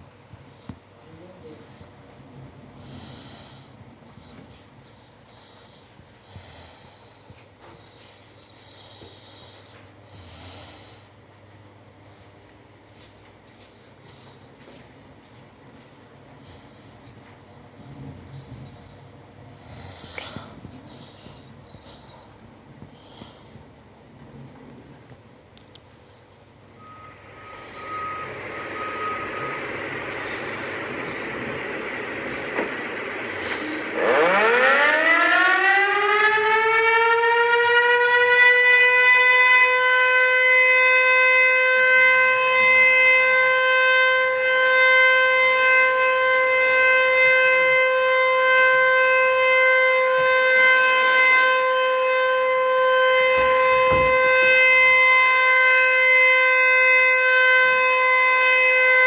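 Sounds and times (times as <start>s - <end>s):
tornado warning siren: 0.0s - 6.1s, 12.9s - 23.4s, 26.3s - 59.0s
steady rushing noise: 26.8s - 34.1s.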